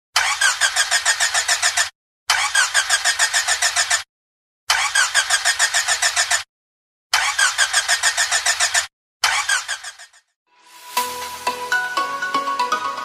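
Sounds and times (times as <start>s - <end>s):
car starter motor cranking: 0.2s - 0.8s.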